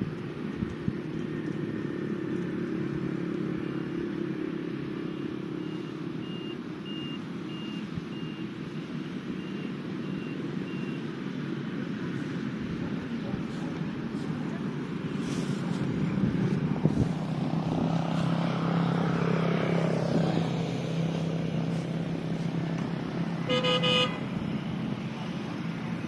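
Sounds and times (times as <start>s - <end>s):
vehicle engine rumble: 0.0s - 26.0s
reversing alarm beeping: 5.6s - 8.5s, 9.4s - 11.0s.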